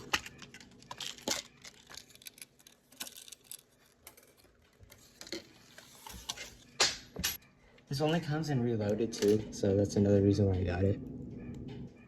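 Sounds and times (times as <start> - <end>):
plastic packaging rustling: 0.0 - 6.7.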